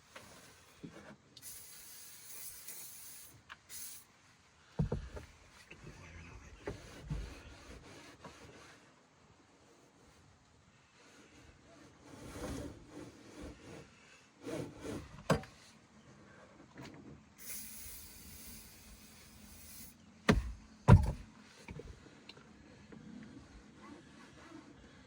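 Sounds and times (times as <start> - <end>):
steady hiss: 1.4 - 4.8, 17.4 - 20.0
sharp knocks: 20.3 - 21.2
seatbelt webbing sliding and rustling: 23.7 - 24.9.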